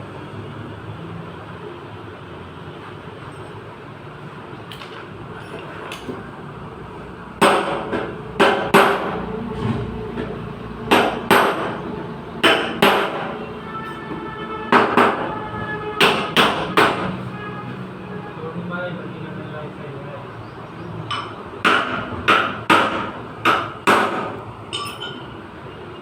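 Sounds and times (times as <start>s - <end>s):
hammer striking sheet metal: 7.4s - 9.2s, 10.9s - 13.4s, 14.7s - 15.4s, 16.0s - 17.2s, 21.1s - 25.2s.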